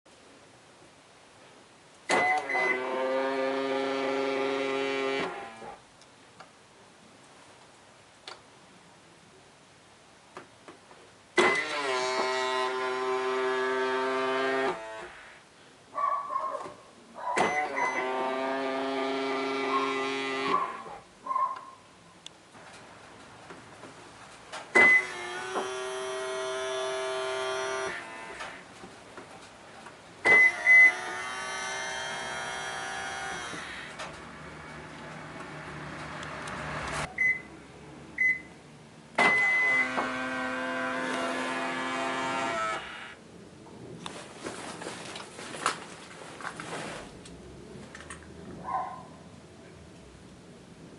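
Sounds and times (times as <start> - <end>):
side mirror motor whining: 2.1 - 5.8, 11.4 - 15.4, 17.6 - 20.9, 24.8 - 28.7, 30.3 - 37.1, 39.2 - 43.2
harsh buzz: 2.2 - 5.8, 11.4 - 15.4, 17.6 - 21.0, 24.8 - 28.7, 30.3 - 34.9, 39.2 - 43.2
high beeps: 37.2 - 37.5.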